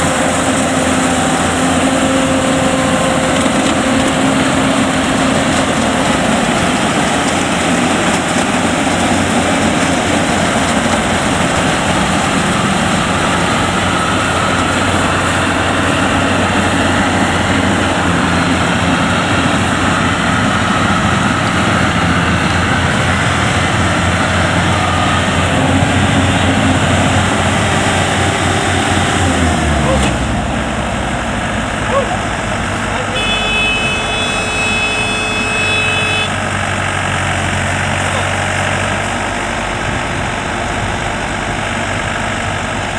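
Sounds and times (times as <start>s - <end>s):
combine harvester engine drone: 0.0s - 42.9s.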